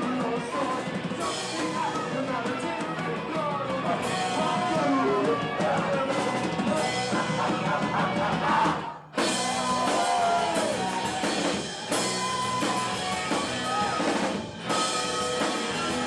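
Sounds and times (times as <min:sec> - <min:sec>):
drum kit: 0:00.0 - 0:16.0
electric guitar: 0:00.0 - 0:16.0
rock music: 0:00.0 - 0:16.0.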